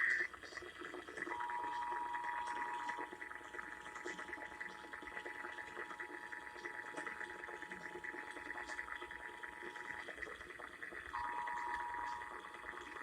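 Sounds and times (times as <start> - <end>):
two-tone alert signal: 1.3 - 3.2, 11.2 - 13.0.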